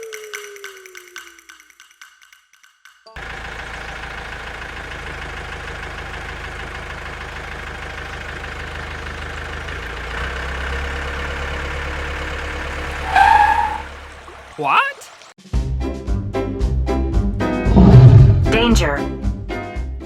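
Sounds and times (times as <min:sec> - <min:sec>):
vehicle engine idling: 0:03.2 - 0:14.5.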